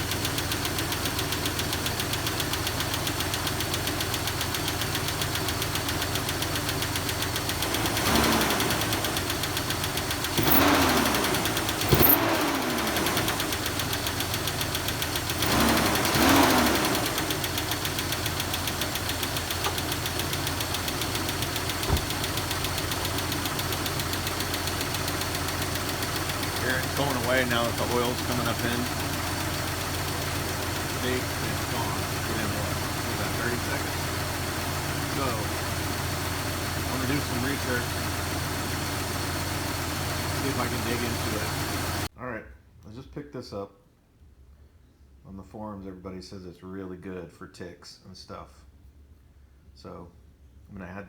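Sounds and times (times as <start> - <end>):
car engine idling with lifter tick: 0.0 - 42.1
engine revving: 7.2 - 42.1.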